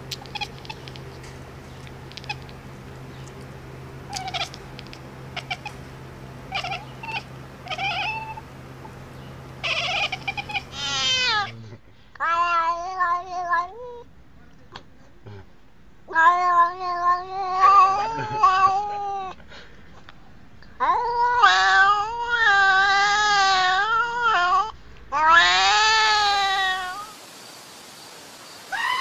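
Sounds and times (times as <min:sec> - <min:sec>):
steady low hum: 0:00.0 - 0:28.8
cat meowing: 0:00.1 - 0:00.9, 0:04.1 - 0:04.6, 0:05.4 - 0:05.8, 0:06.5 - 0:08.4, 0:09.6 - 0:11.5, 0:12.2 - 0:14.0, 0:20.8 - 0:27.1.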